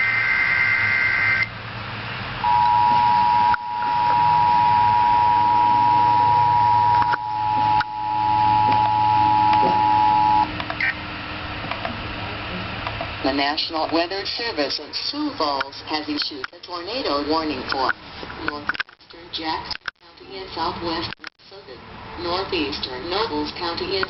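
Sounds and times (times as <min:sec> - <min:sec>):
two-tone alert signal: 0:02.5 - 0:11.0.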